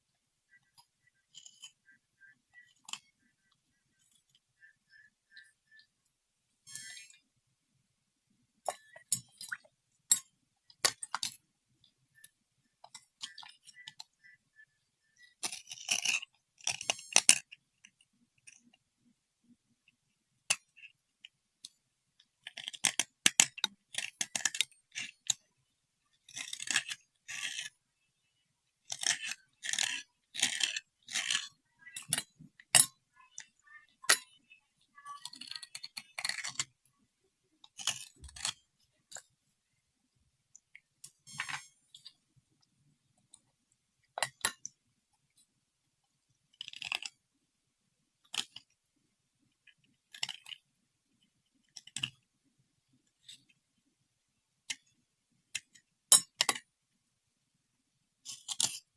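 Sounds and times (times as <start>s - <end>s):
small hard objects scraping and clinking: 12.9s - 17.6s, 26.2s - 28.1s, 28.8s - 36.8s, 37.6s - 39.4s, 41.0s - 42.2s, 58.2s - 58.9s.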